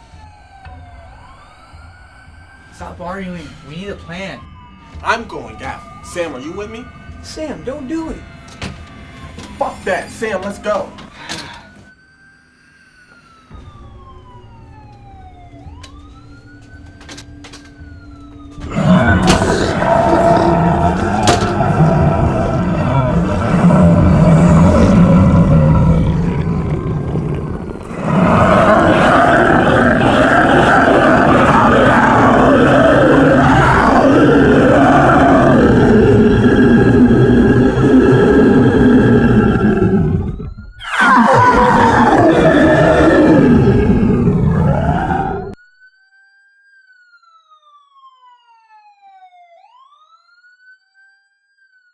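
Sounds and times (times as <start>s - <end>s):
faint siren wailing: 0.0s - 51.9s
zombie growls and roars: 18.6s - 45.6s.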